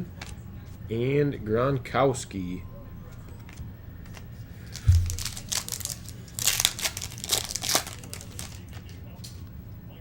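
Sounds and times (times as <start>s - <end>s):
card pack wrapper crinkling and tearing: 4.1s - 8.9s
low thump: 4.9s - 5.3s.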